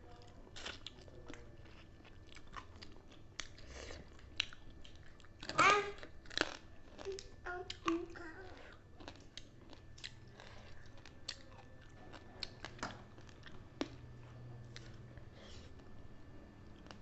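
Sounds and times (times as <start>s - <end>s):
chewing with wet mouth clicks: 0.1s - 15.2s.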